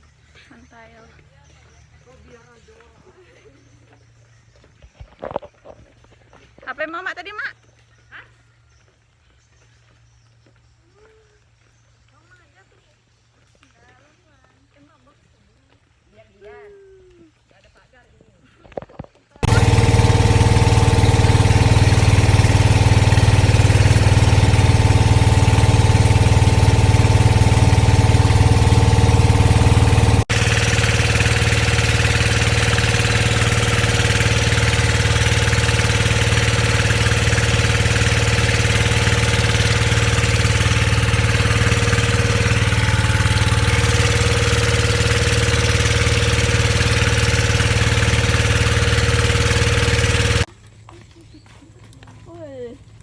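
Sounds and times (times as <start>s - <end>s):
vehicle engine droning: 19.4s - 50.5s.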